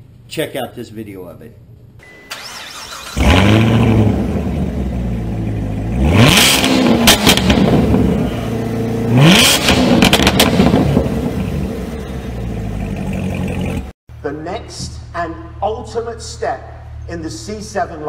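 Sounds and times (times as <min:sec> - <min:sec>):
car engine idling and revving: 0:02.1 - 0:14.0
exhaust pops and crackles: 0:06.3 - 0:08.2, 0:09.4 - 0:11.2.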